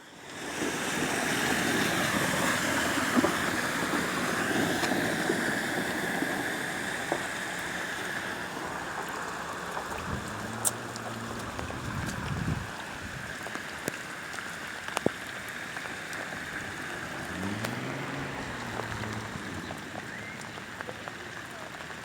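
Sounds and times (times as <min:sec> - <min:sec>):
heavy rain pouring: 0:00.4 - 0:22.0.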